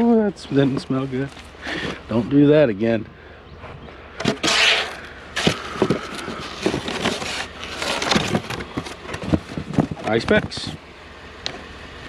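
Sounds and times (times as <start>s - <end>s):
rustling: 4.2s - 10.8s
objects knocking and clattering: 5.4s - 10.7s.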